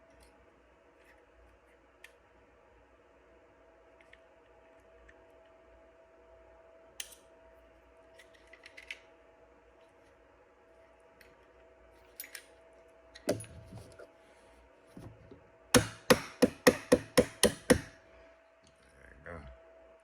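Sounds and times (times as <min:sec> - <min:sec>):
pin punch tapping: 0:15.8 - 0:17.9.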